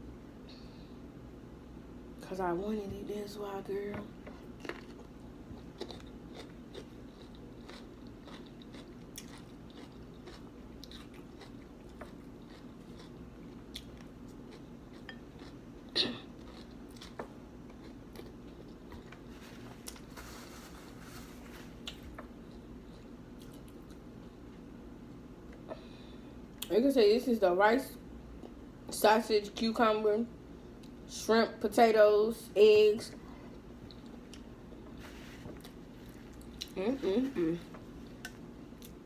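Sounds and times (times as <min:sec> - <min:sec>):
steady low hum: 0:00.0 - 0:39.0
person chewing food: 0:04.2 - 0:24.4, 0:33.5 - 0:39.0.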